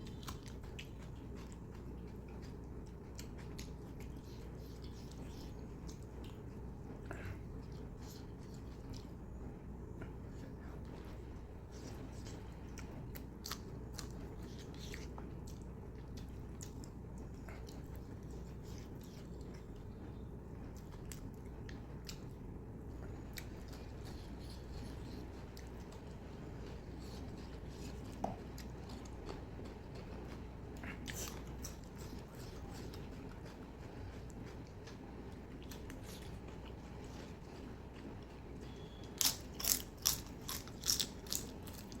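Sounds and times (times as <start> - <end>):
person chewing and biting: 0.0 - 9.2, 23.0 - 42.0
steady low hum: 0.0 - 42.0.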